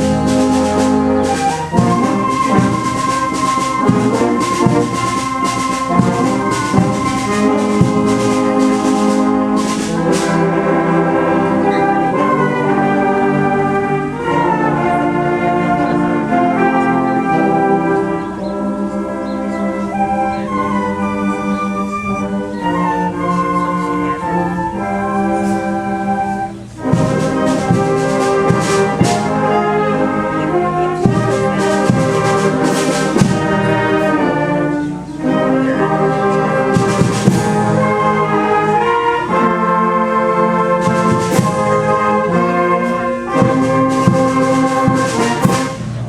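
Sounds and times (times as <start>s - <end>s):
sharp percussion strikes: 0.0s - 10.8s, 26.8s - 29.7s, 31.0s - 34.2s, 36.0s - 38.4s, 40.6s - 46.0s
brass chords: 0.0s - 46.0s
wind ensemble playing: 0.0s - 46.0s.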